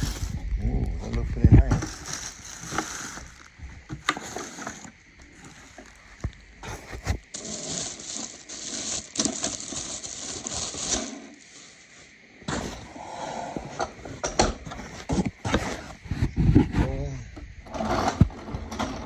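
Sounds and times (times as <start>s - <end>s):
packaging rustling and scraping: 0.0s - 0.4s, 1.4s - 11.8s, 12.5s - 13.0s, 13.6s - 16.9s.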